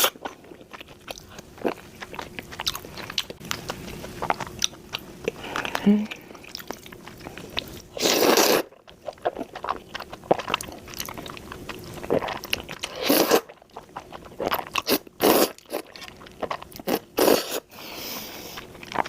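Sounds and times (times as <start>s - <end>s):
chewing and mouth clicks: 0.0s - 17.6s, 18.3s - 19.0s.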